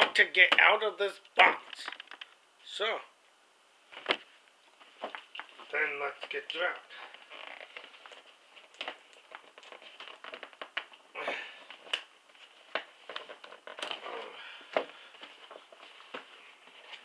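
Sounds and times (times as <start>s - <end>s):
packaging rustling and crackling: 6.9s - 17.0s.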